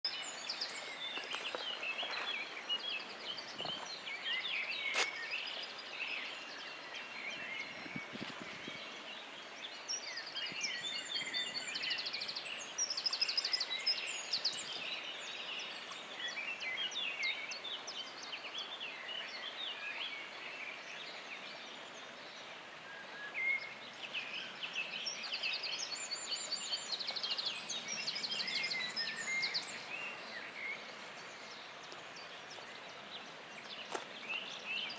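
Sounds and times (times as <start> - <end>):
songbirds singing: 0.0 - 34.9.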